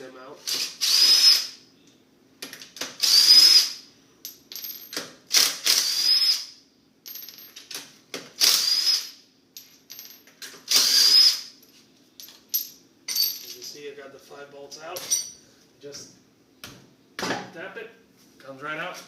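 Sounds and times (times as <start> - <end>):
power tool motor whine: 10.7 - 11.4.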